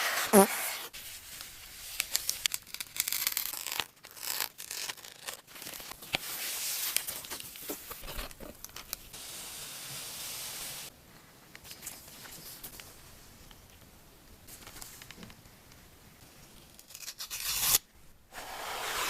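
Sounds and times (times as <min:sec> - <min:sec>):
packaging tearing and rustling: 0:01.9 - 0:07.4.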